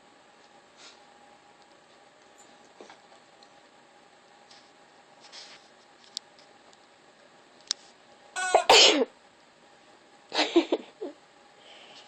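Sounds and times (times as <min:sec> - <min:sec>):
rubber chicken toy squawking: 0:08.4 - 0:08.7.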